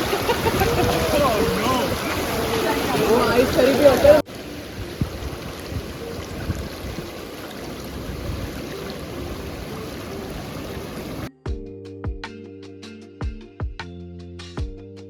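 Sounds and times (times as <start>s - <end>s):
stream water flowing: 0.0s - 11.3s
music with a beat: 11.3s - 15.0s.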